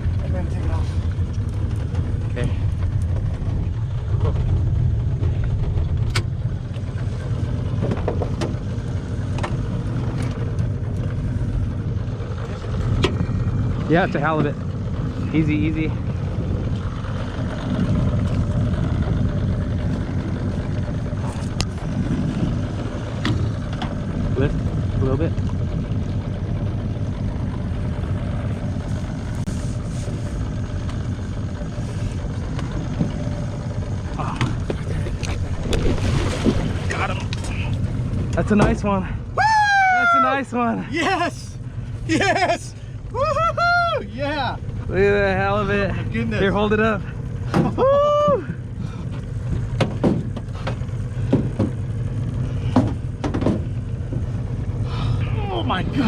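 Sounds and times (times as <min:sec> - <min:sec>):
outboard motor idling: 0:00.0 - 0:56.0
clicks and knocks on boat: 0:07.7 - 0:08.7, 0:09.3 - 0:10.7, 0:23.1 - 0:24.0, 0:49.1 - 0:52.0, 0:52.6 - 0:54.4.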